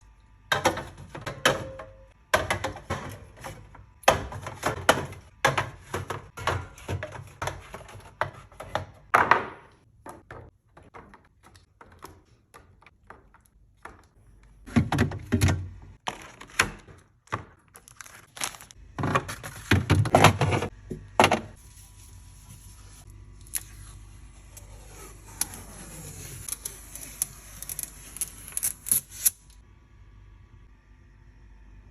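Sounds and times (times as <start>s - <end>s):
food containers clattering: 0.5s - 21.5s.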